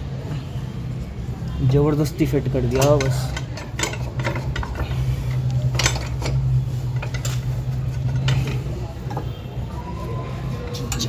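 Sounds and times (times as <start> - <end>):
tools clinking on metal: 2.7 - 6.4.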